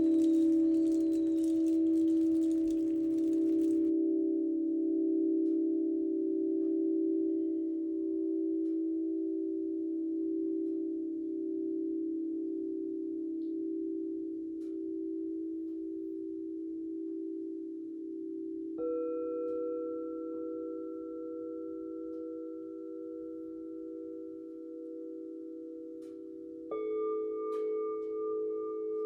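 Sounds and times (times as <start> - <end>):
bell ringing: 0.0 - 3.9.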